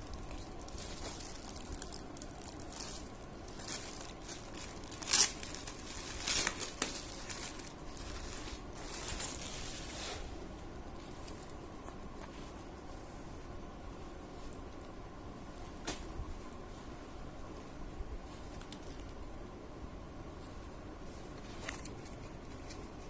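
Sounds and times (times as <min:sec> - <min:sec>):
plastic packaging crinkling: 0:00.0 - 0:10.3.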